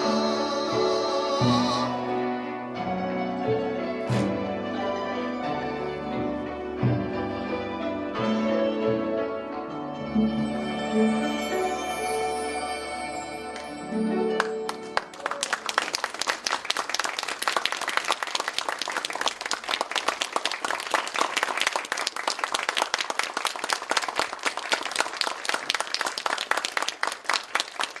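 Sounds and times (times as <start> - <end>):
audience applauding: 10.5 - 28.0.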